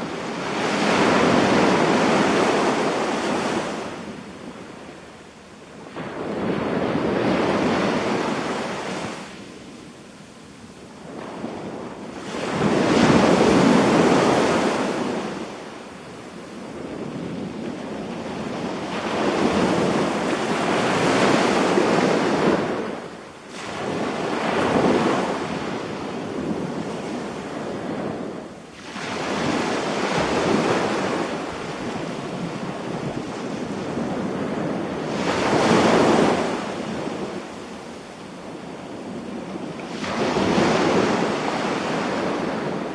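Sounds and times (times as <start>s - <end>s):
wind on microphone: 0.0s - 42.9s
small waves breaking on sand: 10.5s - 42.9s.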